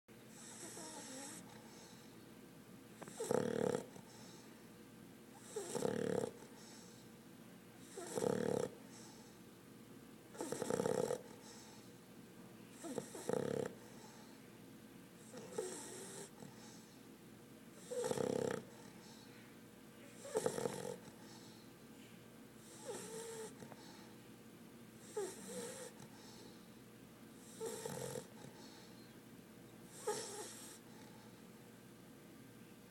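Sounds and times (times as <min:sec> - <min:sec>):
puppy snoring: 0:00.3 - 0:02.1, 0:03.0 - 0:04.5, 0:05.3 - 0:07.1, 0:07.8 - 0:09.4, 0:10.3 - 0:11.9, 0:12.7 - 0:14.3, 0:15.2 - 0:17.0, 0:17.8 - 0:19.3, 0:20.0 - 0:21.6, 0:22.6 - 0:24.1, 0:25.0 - 0:26.6, 0:27.4 - 0:29.1, 0:29.8 - 0:31.4.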